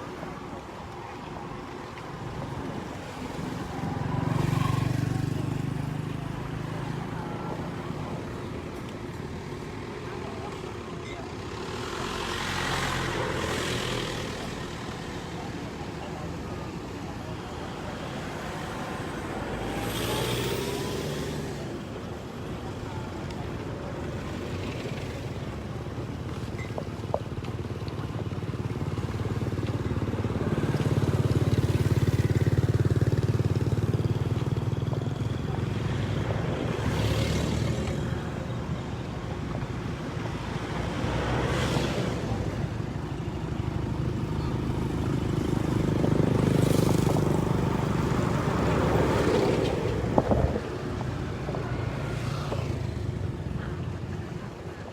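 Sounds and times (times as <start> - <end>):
vehicles passing on a road: 0.0 - 54.9.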